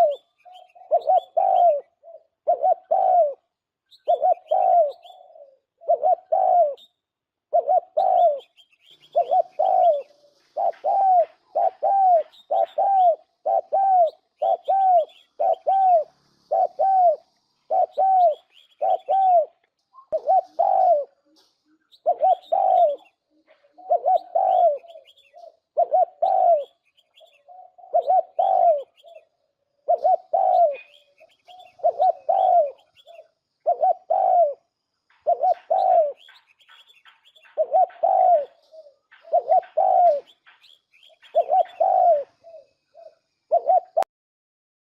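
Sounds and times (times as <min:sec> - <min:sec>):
small birds chirping: 0:00.0 - 0:44.0
dove cooing: 0:00.0 - 0:44.1.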